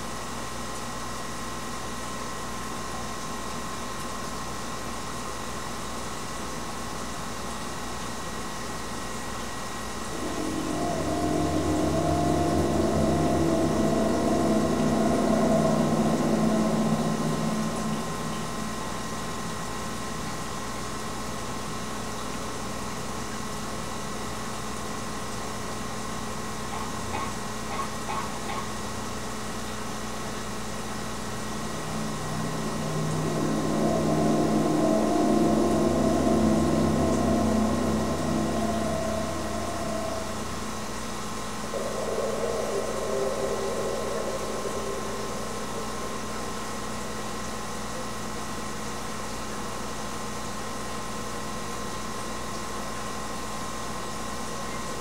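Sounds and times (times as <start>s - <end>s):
steady background hum: 9.2s - 21.9s, 23.6s - 53.0s
low groaning mechanical drone: 9.8s - 20.8s, 25.5s - 48.7s.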